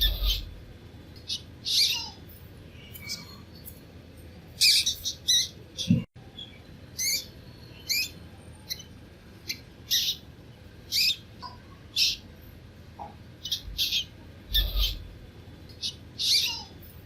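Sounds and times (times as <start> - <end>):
baby mice squeaking: 0.0 - 0.6, 1.2 - 3.6, 4.6 - 10.3, 10.9 - 12.3, 13.0 - 15.1, 15.8 - 17.0.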